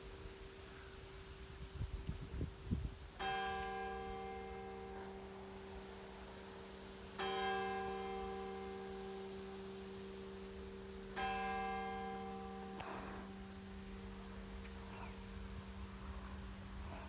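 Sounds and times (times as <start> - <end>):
church bell tolling: 3.2 - 15.9.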